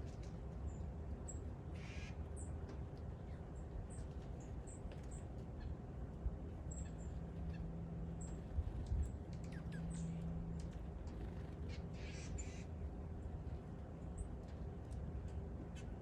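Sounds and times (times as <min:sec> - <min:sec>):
steady low rumble: 0:00.0 - 0:16.0
birds chirping: 0:06.5 - 0:12.8.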